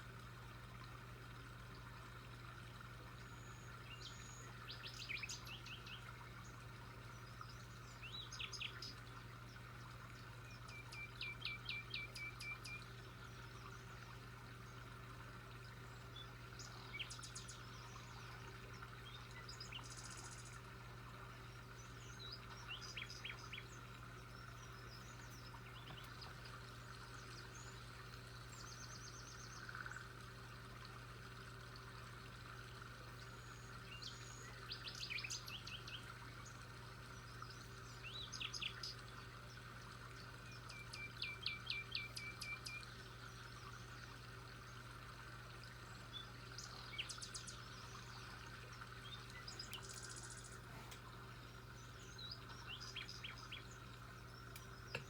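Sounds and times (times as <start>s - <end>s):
faint background hum: 0.0s - 55.0s
songbirds chirping: 0.7s - 55.0s.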